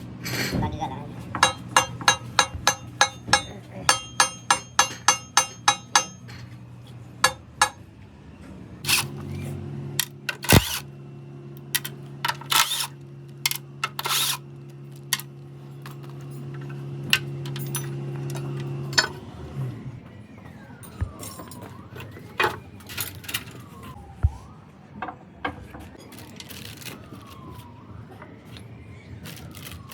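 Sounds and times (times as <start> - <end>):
rapid metallic clinks: 1.4 - 6.4
siren wailing: 18.3 - 29.9.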